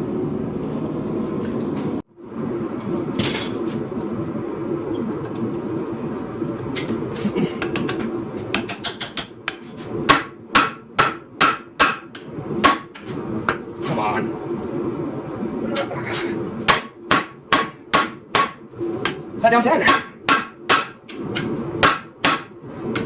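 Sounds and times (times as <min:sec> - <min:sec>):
steady rushing noise: 0:00.0 - 0:23.0
hammer striking steel on anvil: 0:16.7 - 0:18.6, 0:19.8 - 0:21.0, 0:21.8 - 0:22.5.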